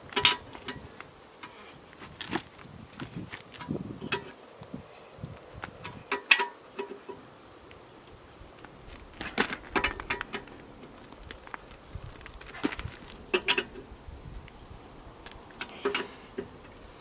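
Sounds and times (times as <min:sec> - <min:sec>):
metal tools clanking and rattling: 0:15.6 - 0:16.6.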